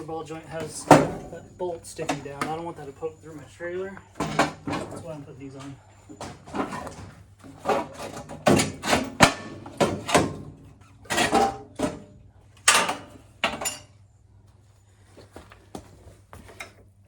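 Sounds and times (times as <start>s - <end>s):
knocks and clanks of hand tools: 4.1s - 13.9s.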